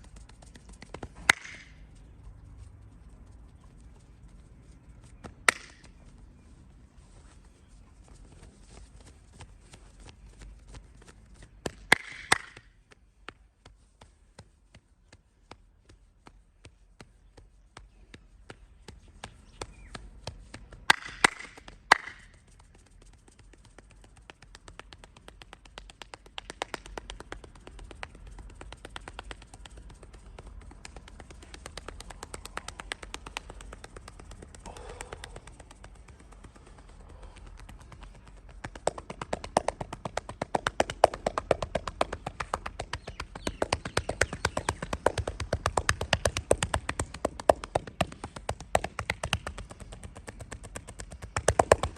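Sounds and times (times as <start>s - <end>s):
loud sharp snaps: 0.6s - 1.8s, 5.4s - 6.0s, 11.6s - 12.7s, 20.9s - 22.4s.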